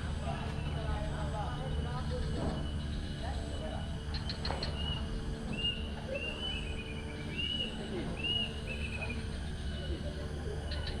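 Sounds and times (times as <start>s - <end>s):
steady low rumble: 0.0s - 11.0s
songbird calling: 0.2s - 11.0s.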